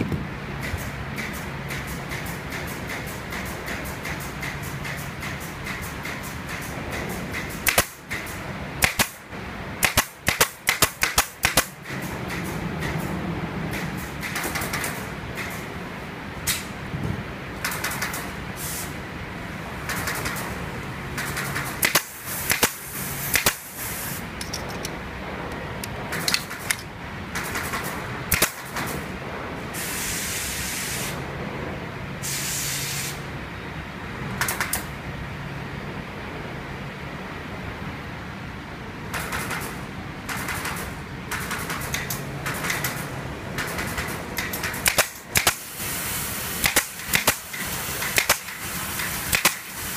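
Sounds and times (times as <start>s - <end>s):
sharp snaps and knocks: 9.8s - 13.1s, 17.6s - 18.3s, 19.9s - 20.5s, 34.4s - 34.9s, 39.1s - 45.6s, 46.6s - 49.7s
hissing spray of air: 17.9s - 19.0s, 21.4s - 24.3s, 29.7s - 31.2s, 32.2s - 33.3s, 44.9s - 49.9s.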